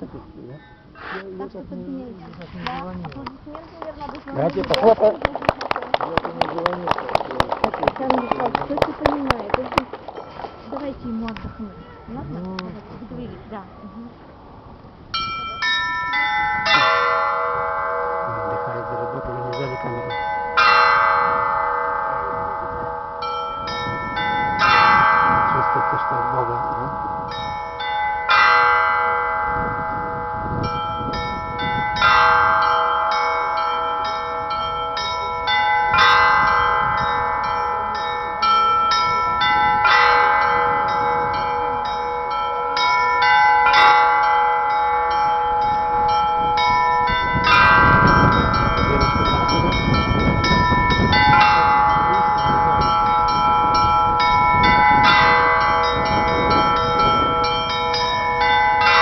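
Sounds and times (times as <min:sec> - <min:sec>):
deep bell struck: 0:15.2 - 0:59.0
small high bells chiming: 0:15.2 - 0:59.0.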